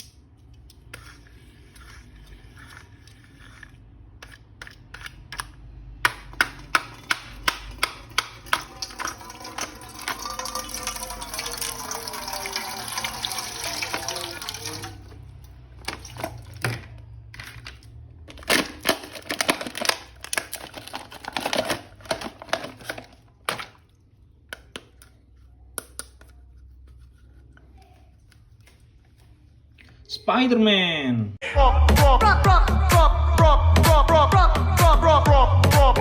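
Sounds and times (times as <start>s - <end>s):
water running: 7.7s - 16.8s.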